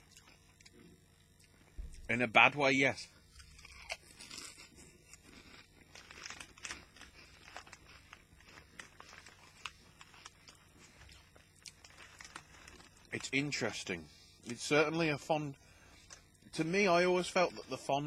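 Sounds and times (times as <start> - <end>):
potato crisps being chewed: 0.0 - 2.1, 3.3 - 15.3, 15.9 - 17.8.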